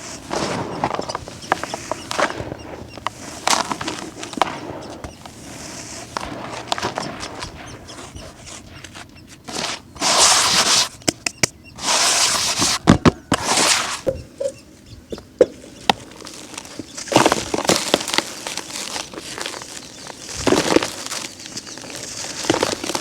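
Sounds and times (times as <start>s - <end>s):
concrete being crushed: 15.4s - 23.0s.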